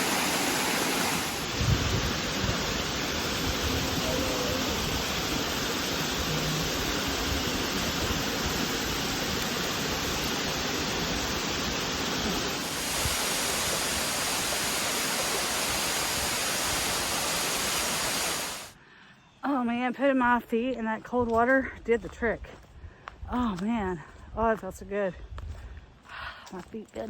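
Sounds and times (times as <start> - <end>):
waterfall rushing: 0.0 - 18.8.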